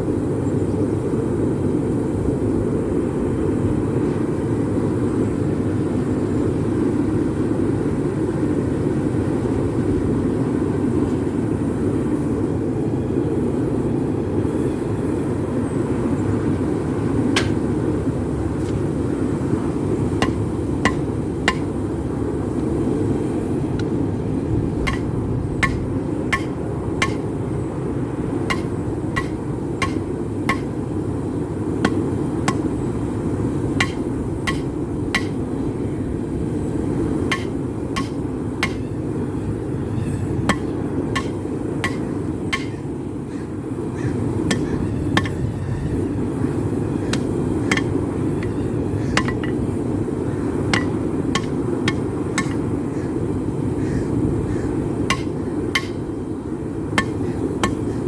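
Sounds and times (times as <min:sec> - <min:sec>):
hammer striking metal on anvil: 0:17.4 - 0:17.7, 0:20.2 - 0:21.9, 0:24.9 - 0:27.5, 0:28.5 - 0:31.0, 0:31.8 - 0:33.0, 0:33.7 - 0:35.5, 0:37.3 - 0:39.0, 0:40.0 - 0:42.9, 0:44.5 - 0:45.5, 0:47.1 - 0:48.6, 0:49.2 - 0:49.7, 0:50.7 - 0:52.7, 0:55.1 - 0:56.2, 0:57.0 - 0:57.9.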